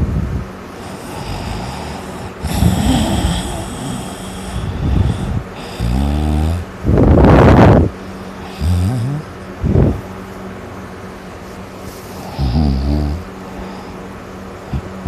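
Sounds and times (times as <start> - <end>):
noisy breathing: 0.0 - 15.0
loud rasping snoring: 0.8 - 10.0, 12.2 - 14.0.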